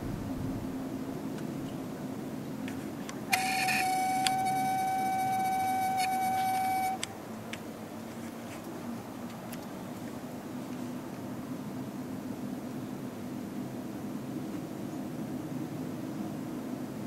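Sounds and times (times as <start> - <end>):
low background hum: 0.0 - 17.0
electronic beep tone: 3.3 - 7.0.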